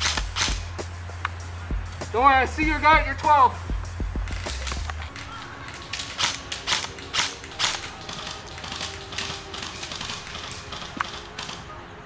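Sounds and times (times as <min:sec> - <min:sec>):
airsoft rifle shots: 0:00.0 - 0:00.8, 0:04.3 - 0:11.7
background music: 0:00.0 - 0:12.0.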